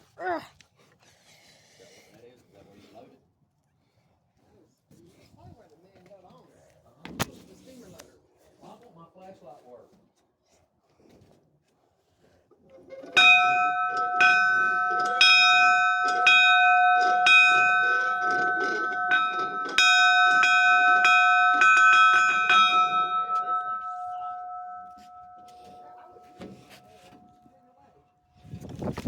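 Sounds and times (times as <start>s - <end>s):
locomotive bell ringing: 12.8s - 27.8s.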